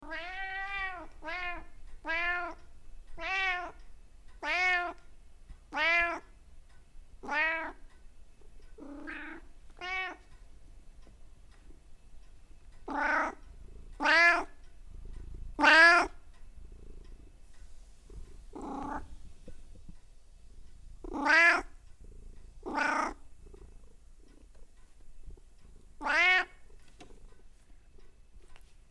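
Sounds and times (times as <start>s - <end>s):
cat meowing: 0.0s - 2.6s, 3.2s - 3.8s, 4.4s - 5.0s, 5.7s - 6.3s, 7.2s - 7.8s, 8.8s - 10.3s, 12.9s - 13.4s, 14.0s - 14.6s, 15.6s - 16.2s, 21.0s - 21.8s, 22.6s - 23.2s, 26.0s - 26.6s
faint low rumble: 0.0s - 28.9s.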